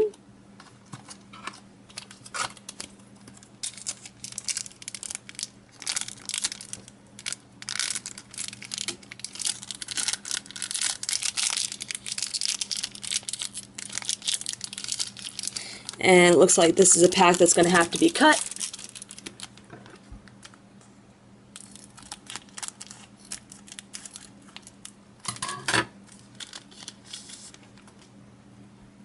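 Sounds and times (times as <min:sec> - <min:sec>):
foil wrapper crinkling: 0:01.0 - 0:20.6, 0:21.6 - 0:28.0.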